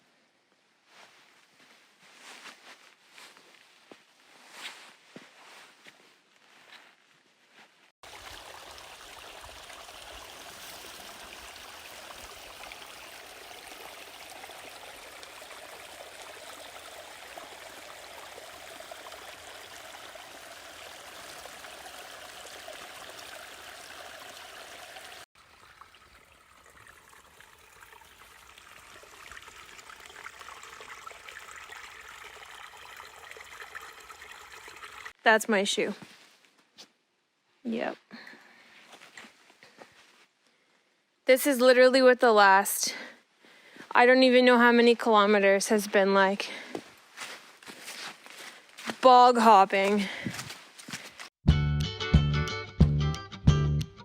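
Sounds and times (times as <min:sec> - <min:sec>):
stream water rushing: 0:08.0 - 0:35.2.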